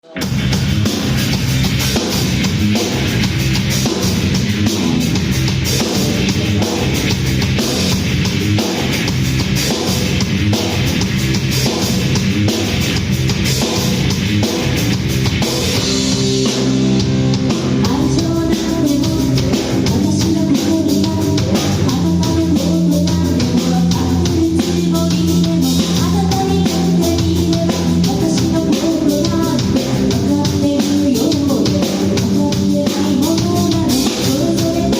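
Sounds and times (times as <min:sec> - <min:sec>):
live rock band playing: 0:00.0 - 0:34.9
steady drum beat: 0:00.0 - 0:34.9.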